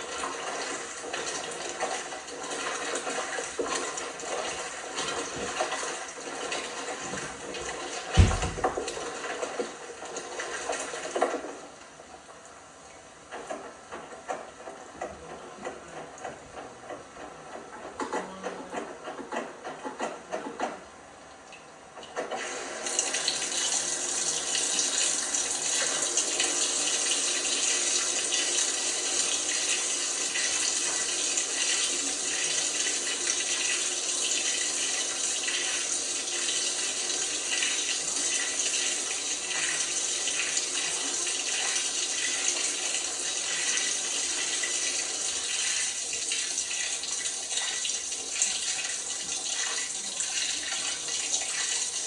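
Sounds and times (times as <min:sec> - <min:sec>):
water rushing into drum: 0:00.0 - 0:11.1
inlet valve opening: 0:08.2 - 0:08.9.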